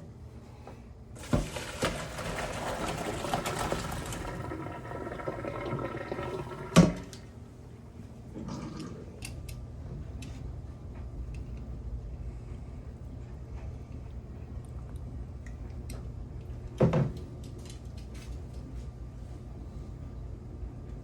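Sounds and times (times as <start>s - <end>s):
running water: 1.2s - 7.3s.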